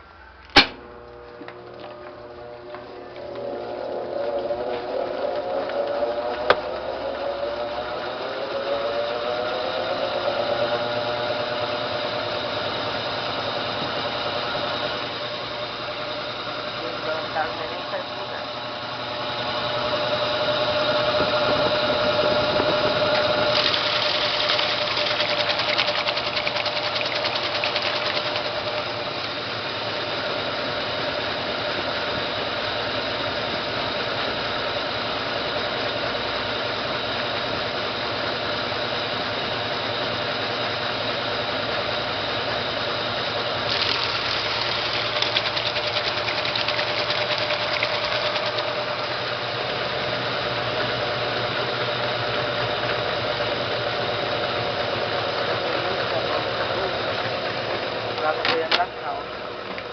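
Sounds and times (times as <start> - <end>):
washing machine spin hum: 0.0 - 59.9
washing machine fast rattle: 21.0 - 30.1, 43.6 - 49.2.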